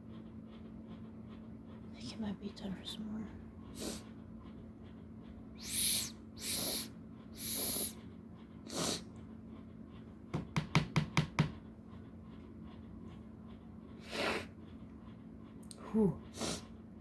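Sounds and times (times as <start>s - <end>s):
person sniffing through nose: 3.7s - 4.1s, 5.6s - 8.0s, 8.7s - 9.1s, 14.0s - 14.5s, 16.3s - 16.7s.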